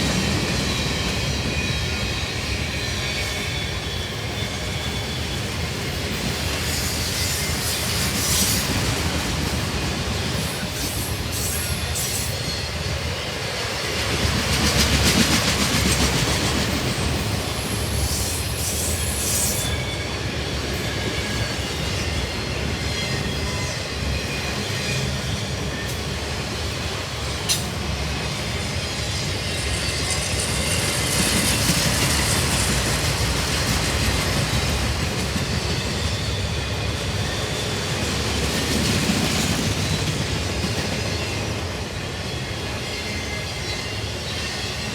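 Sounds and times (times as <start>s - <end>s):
train wheels rumbling on rails: 0.0s - 44.9s
high wheel squeal: 0.1s - 8.8s, 10.3s - 13.3s, 16.8s - 26.0s, 28.2s - 37.9s.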